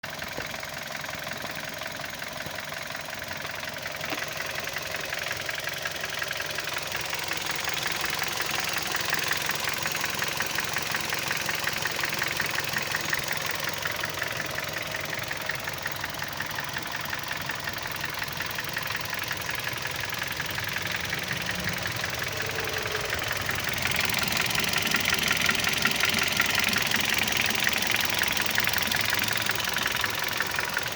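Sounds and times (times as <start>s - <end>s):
petrol engine ticking knock: 0.1s - 30.9s.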